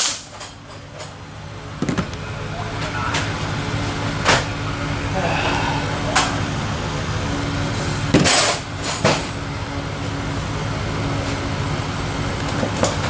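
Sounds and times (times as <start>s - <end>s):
mechanical hum: 0.0s - 13.0s.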